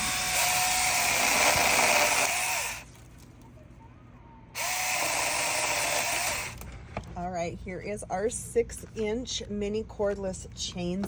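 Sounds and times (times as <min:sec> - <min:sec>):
mini chainsaw running: 0:00.0 - 0:02.9, 0:04.6 - 0:06.6.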